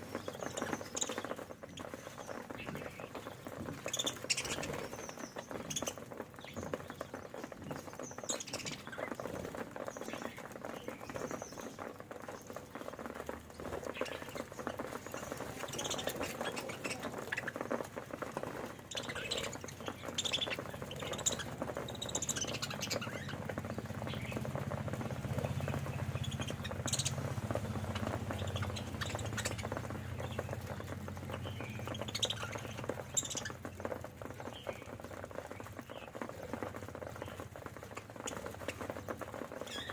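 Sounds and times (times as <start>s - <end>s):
pecking and seed-husking: 0.0s - 39.9s
budgerigars chirping: 18.9s - 33.6s.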